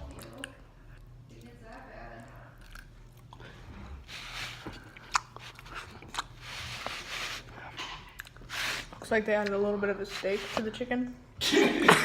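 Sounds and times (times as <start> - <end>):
person chewing crispy chicken: 2.6 - 9.0.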